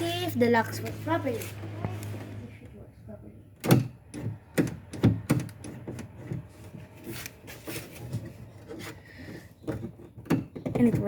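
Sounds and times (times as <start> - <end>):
car door latch clicks and clunks: 3.6 - 6.2.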